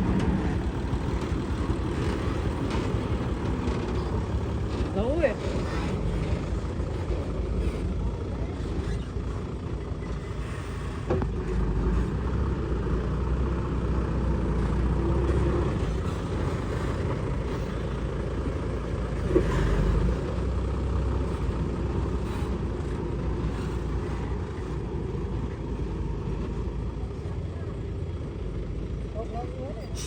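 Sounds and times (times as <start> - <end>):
diesel engine rumbling: 0.0 - 30.0.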